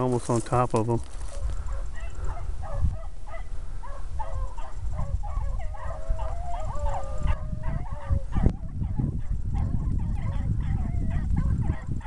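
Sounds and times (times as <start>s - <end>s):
hounds baying: 1.3s - 12.0s
dog howling: 3.9s - 9.1s.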